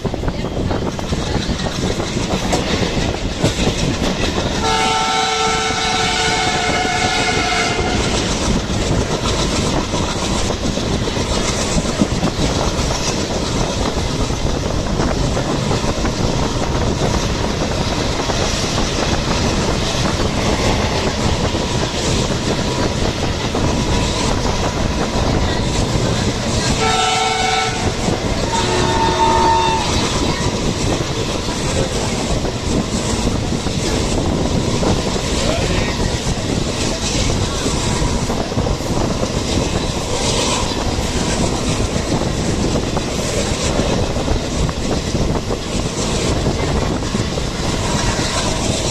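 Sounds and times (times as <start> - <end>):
train rumble with wheel clatter: 0.0 - 48.9
train horn: 4.6 - 8.3, 26.7 - 30.2.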